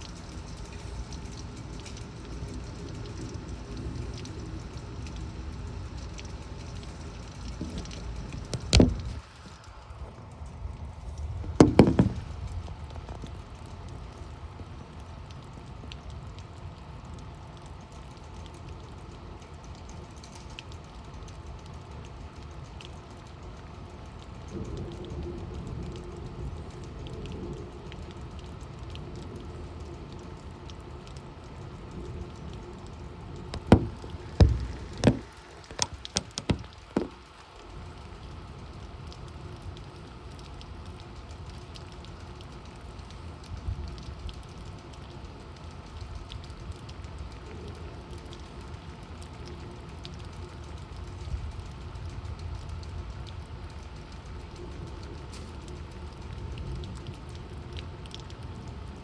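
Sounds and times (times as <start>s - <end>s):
torrential rain: 0.0s - 59.0s
loud sharp knocks: 11.6s - 12.3s, 33.6s - 37.2s.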